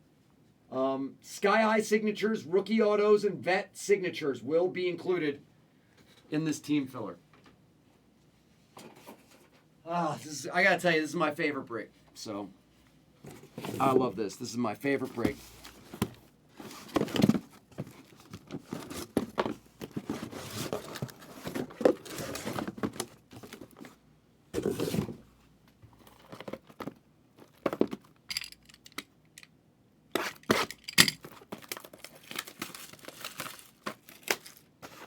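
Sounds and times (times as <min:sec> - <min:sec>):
packaging torn and crinkled: 0:30.2 - 0:34.7.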